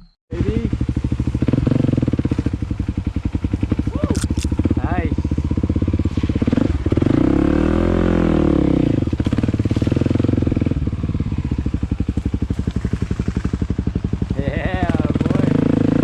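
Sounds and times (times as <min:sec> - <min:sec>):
dirt bike engine revving: 0:00.0 - 0:16.0.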